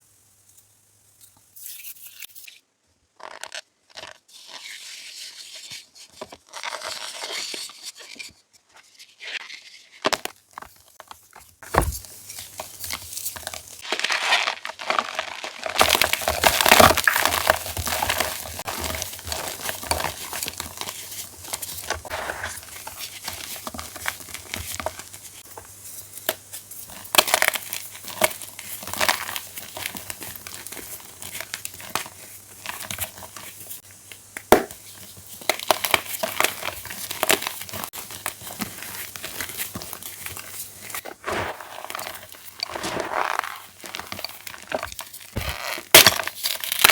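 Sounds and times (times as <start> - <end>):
chalk blocks crumbling and crackling: 10.0 - 33.6, 34.5 - 46.9.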